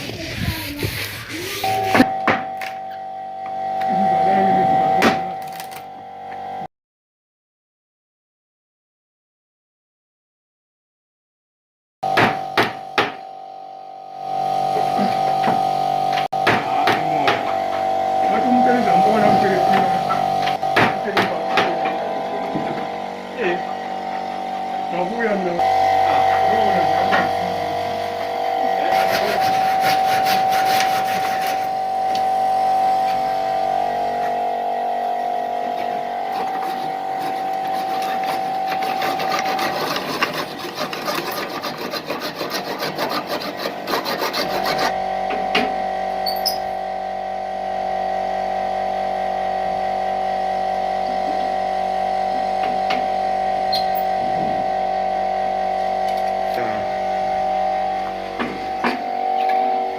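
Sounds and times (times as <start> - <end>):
power tool motor running: 14.3 - 59.9
tool rasping against wood: 28.8 - 31.8, 36.2 - 45.0.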